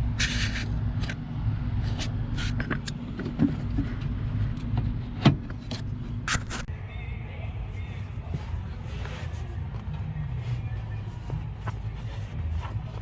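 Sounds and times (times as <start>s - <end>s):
steady low hum: 6.7s - 13.0s.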